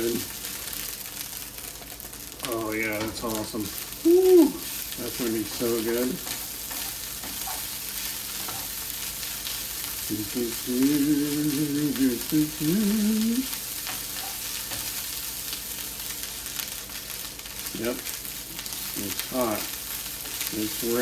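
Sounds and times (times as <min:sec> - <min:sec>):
rice sizzling in a hot pan: 0:00.0 - 0:21.0
man humming a tune: 0:04.0 - 0:04.6, 0:10.1 - 0:13.5.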